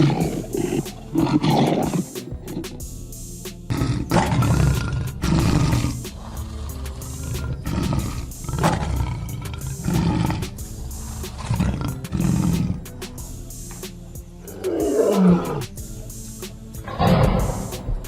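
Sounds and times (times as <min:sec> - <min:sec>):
lion roaring: 0:00.0 - 0:02.8, 0:03.7 - 0:13.0, 0:14.4 - 0:15.7, 0:16.8 - 0:17.8
background music: 0:00.0 - 0:18.0.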